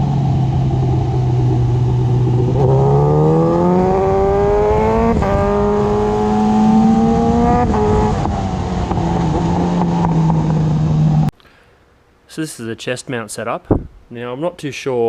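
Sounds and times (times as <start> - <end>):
motorcycle engine accelerating: 0.0 - 11.3
wind rush: 0.0 - 11.3.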